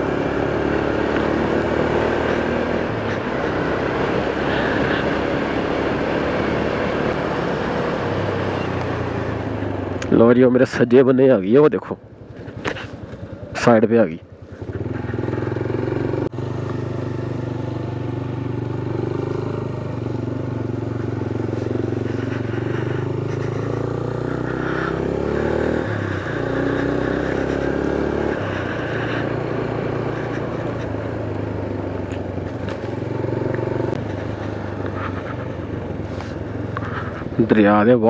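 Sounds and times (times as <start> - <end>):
motorcycle engine running: 0.0 - 38.0
road noise: 0.0 - 38.0.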